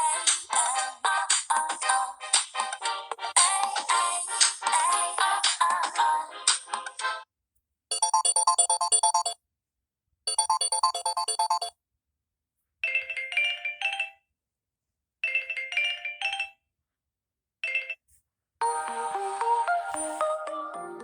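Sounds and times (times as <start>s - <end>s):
electronic ringtone notes: 7.9s - 9.4s, 10.3s - 11.7s, 18.6s - 21.0s.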